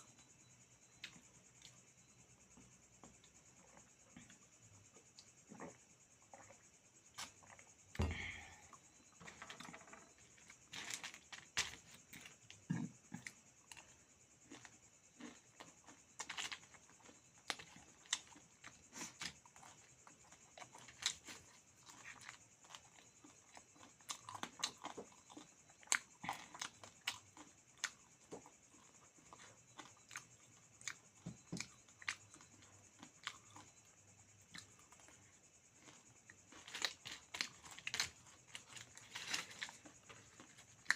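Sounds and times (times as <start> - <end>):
person chewing and crunching: 9.4 - 40.9.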